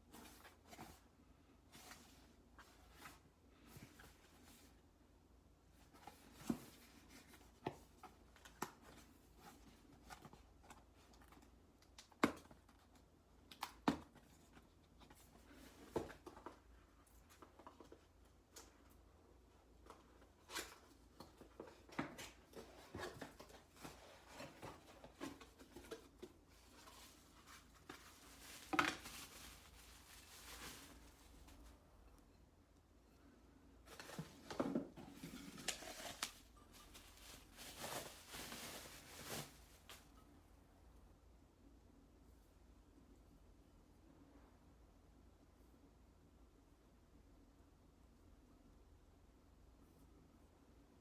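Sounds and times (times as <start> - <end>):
soft packaging rustle: 0.0 - 4.9, 5.7 - 32.3, 33.8 - 40.4
light clicks and taps of packaging: 6.0 - 19.0, 33.9 - 38.6.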